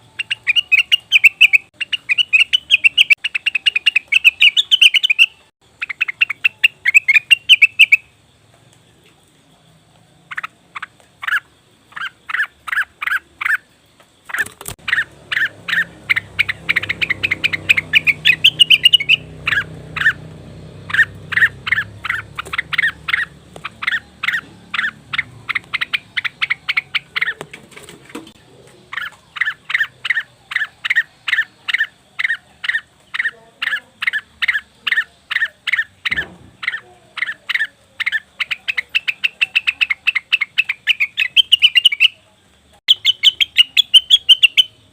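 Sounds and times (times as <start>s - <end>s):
bird calling sharp notes: 0.0s - 8.1s, 14.3s - 42.2s, 42.9s - 44.9s
knock: 36.1s - 36.6s.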